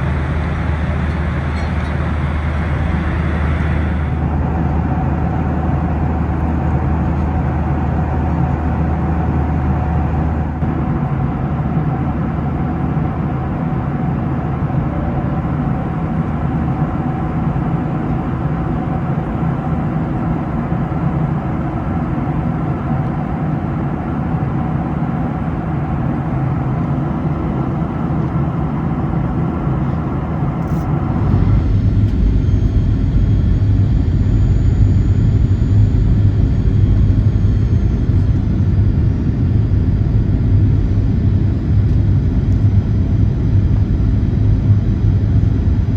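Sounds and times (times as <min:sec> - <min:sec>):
aircraft cabin air rush: 0:00.0 - 0:11.1
low engine hum: 0:00.0 - 0:21.1, 0:24.8 - 0:45.9
deep aircraft rumble: 0:00.0 - 0:45.9.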